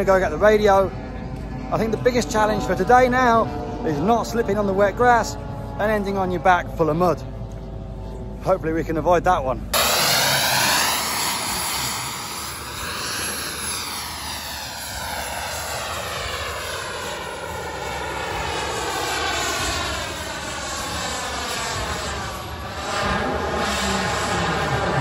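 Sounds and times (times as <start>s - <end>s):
aircraft engine rushing: 0.0s - 25.0s.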